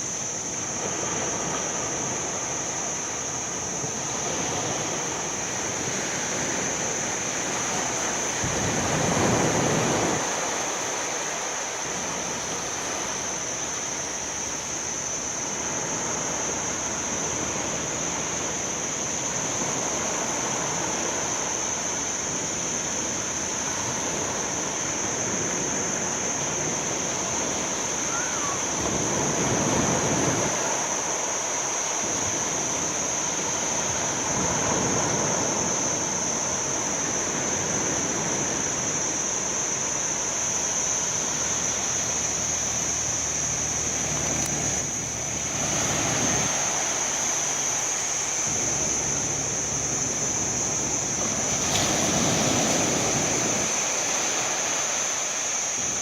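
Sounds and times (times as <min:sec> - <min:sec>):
sea waves washing onto shore: 0:00.0 - 0:56.0
steady high-pitched tone: 0:32.2 - 0:56.0.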